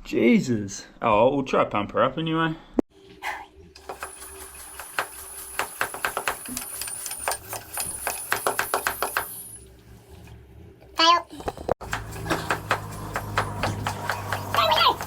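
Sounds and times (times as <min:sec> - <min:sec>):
rapid mechanical clicking: 0:03.8 - 0:09.2.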